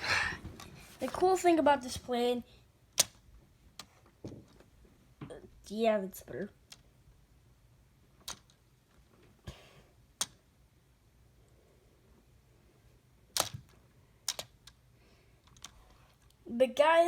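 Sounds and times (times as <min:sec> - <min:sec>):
plastic toy bricks clicking: 0:08.2 - 0:08.6, 0:14.2 - 0:14.8.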